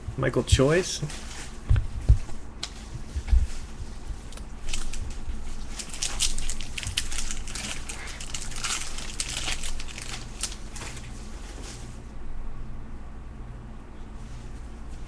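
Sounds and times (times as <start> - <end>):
packaging crinkling and rustling: 4.2 - 11.7.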